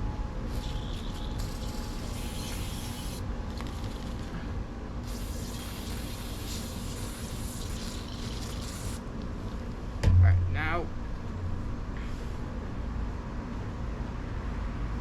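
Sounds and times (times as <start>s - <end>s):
steady low rumble: 9.0s - 14.1s.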